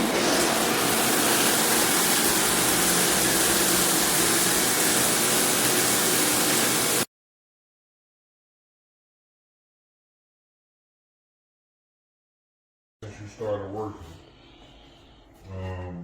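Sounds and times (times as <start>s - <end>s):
water running from shower head: 0.0s - 7.1s.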